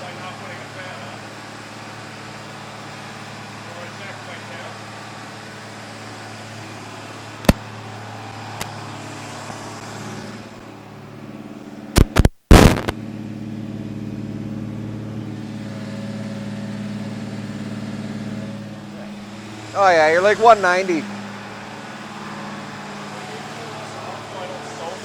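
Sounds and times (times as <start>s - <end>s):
engine running at fast idle: 0.0s - 12.0s, 12.6s - 25.0s.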